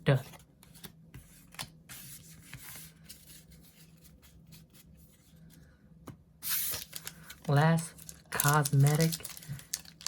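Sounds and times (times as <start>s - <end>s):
rustling of card packs: 6.4s - 10.0s.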